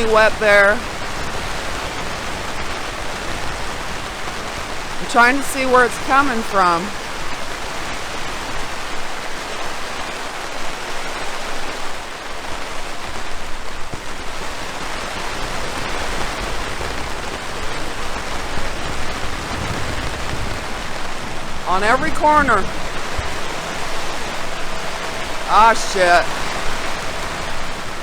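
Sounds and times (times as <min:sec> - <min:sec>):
rain on fabric roof: 0:00.0 - 0:28.0.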